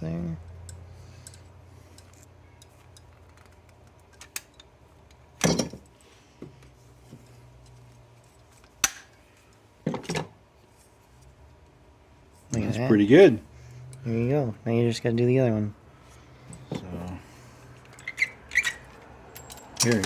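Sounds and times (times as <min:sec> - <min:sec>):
metal parts and tools clinking: 0:17.8 - 0:20.0.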